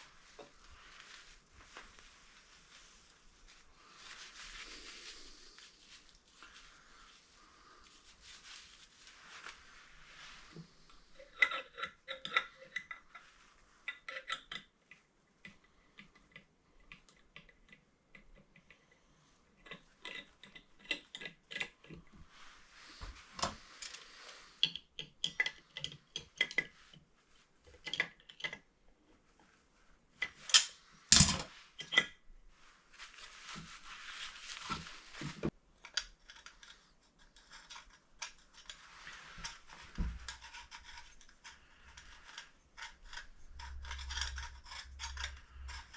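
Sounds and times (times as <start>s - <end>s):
rubbing or scraping: 0.0s - 14.2s, 21.5s - 24.7s, 29.1s - 35.6s, 36.4s - 45.9s
hand tools clinking and tapping: 30.3s - 32.1s.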